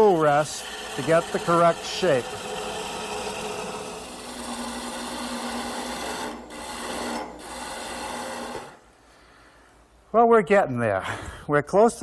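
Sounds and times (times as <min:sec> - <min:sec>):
gouge scraping wood on lathe: 0:00.0 - 0:08.8
lathe low hum: 0:00.0 - 0:08.8.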